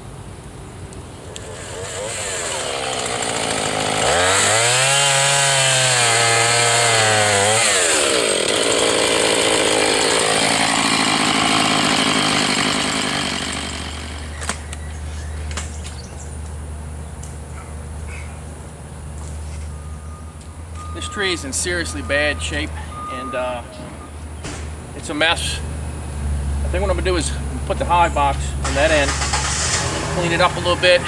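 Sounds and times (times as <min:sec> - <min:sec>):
chainsaw idling: 0:01.2 - 0:14.7, 0:26.7 - 0:31.0
chainsaw cutting tree trunk: 0:01.2 - 0:14.8, 0:28.6 - 0:31.0
sharp knocks: 0:24.4 - 0:24.8.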